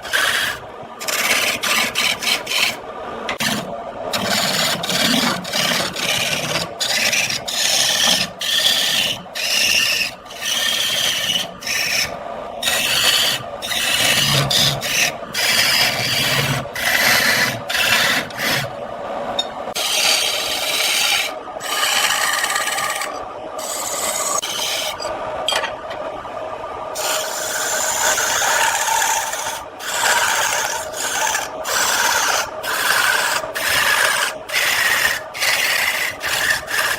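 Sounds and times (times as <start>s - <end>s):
lathe tool scraping wood: 0.0s - 18.7s, 19.7s - 25.0s, 27.0s - 36.9s.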